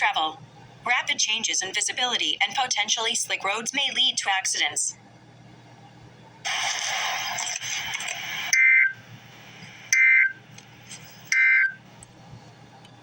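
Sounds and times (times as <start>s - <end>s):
loud hiss: 6.4s - 8.6s.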